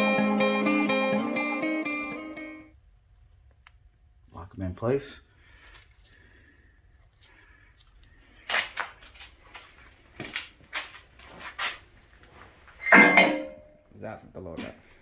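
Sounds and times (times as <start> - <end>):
metal parts knocking: 12.8 - 13.6
metal clatter: 12.8 - 13.7.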